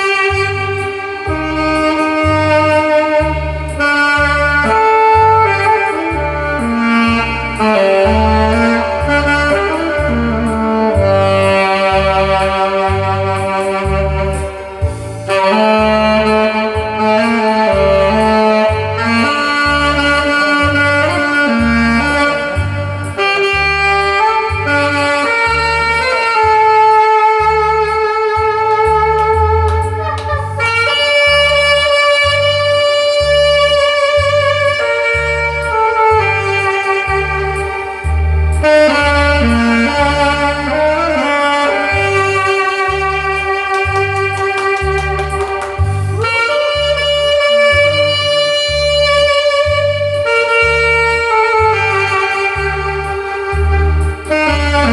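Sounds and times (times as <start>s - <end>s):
backing track with bass beat: 0.0s - 54.9s
saxophone melody: 0.0s - 54.9s.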